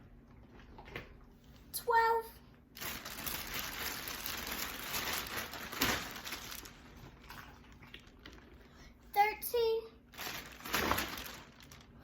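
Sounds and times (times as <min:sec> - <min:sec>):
bag rustling and crinkling: 0:02.8 - 0:08.7, 0:10.1 - 0:12.0.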